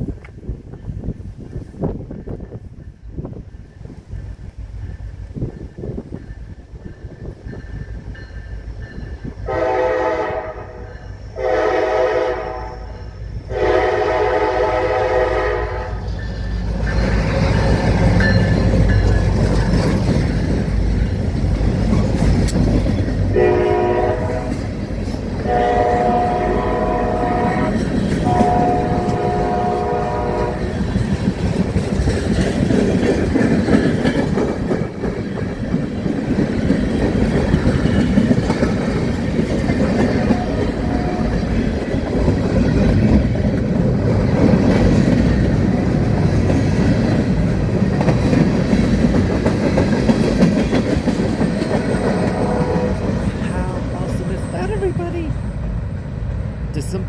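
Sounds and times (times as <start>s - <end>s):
locomotive rumble: 0.0s - 57.0s
train horn blasts: 9.4s - 16.1s, 23.3s - 24.7s, 25.4s - 30.9s, 40.2s - 41.6s, 52.1s - 53.3s
wheels clacking over rail joints: 16.0s - 55.1s.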